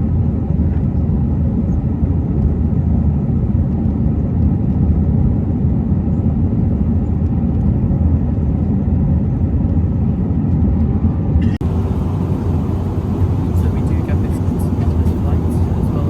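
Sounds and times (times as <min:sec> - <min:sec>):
airplane cabin rumble: 0:00.0 - 0:16.0.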